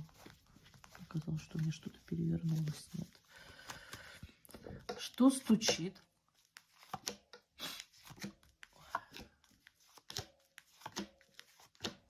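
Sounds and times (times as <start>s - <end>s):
cards flicking and sliding: 6.5s - 12.0s.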